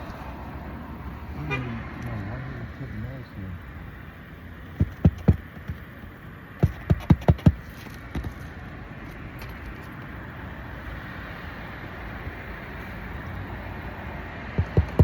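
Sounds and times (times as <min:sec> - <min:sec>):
hammer blows on nails: 0:04.8 - 0:05.8, 0:06.6 - 0:07.6, 0:14.6 - 0:15.0.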